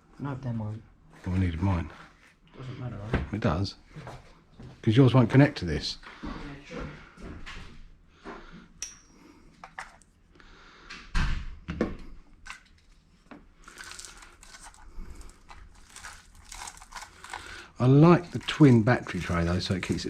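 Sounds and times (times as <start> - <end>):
rustling: 12.4 - 17.6.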